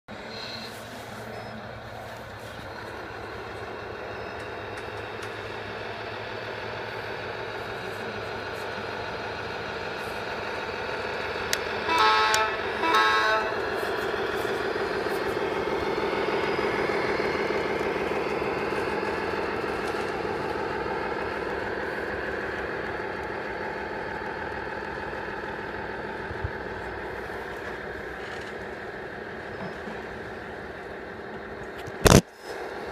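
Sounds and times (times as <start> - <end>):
model truck motor hum: 0.1 - 32.9
short horn toots: 11.9 - 13.6.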